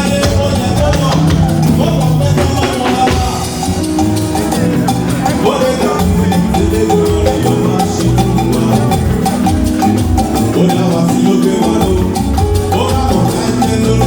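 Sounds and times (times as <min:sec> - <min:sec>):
shakers and percussion: 0:00.0 - 0:14.0
upbeat live church music: 0:00.0 - 0:14.0.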